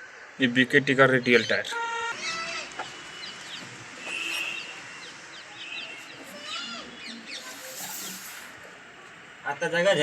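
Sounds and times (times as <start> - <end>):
birds chirping: 1.1 - 8.6
faint background voices: 3.6 - 9.4.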